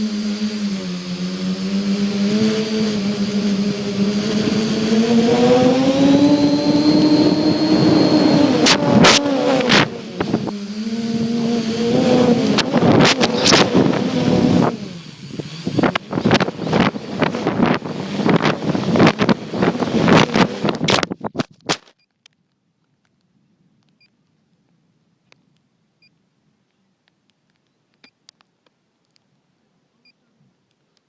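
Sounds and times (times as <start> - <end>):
drone propellers droning: 0.0 - 21.1
wind rush: 1.6 - 21.4
sharp cracks and pops: 20.1 - 24.7.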